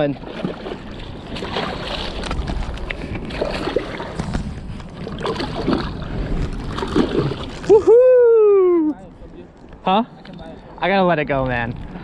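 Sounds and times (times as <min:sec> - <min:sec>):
river water lapping: 0:00.0 - 0:08.8
wind buffeting microphone: 0:00.3 - 0:09.6.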